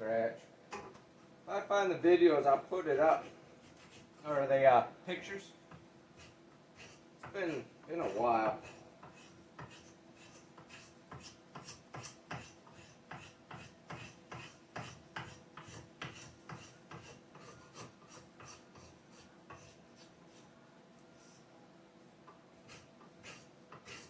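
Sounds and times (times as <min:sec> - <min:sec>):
rasp scraping wood: 0:06.2 - 0:20.1, 0:22.7 - 0:24.0.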